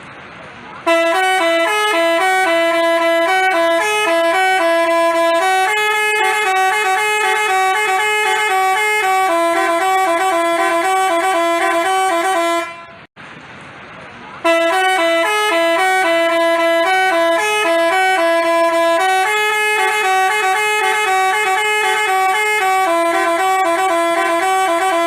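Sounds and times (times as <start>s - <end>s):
musical horn playing fast tune: 0.8s - 13.1s, 14.4s - 25.0s.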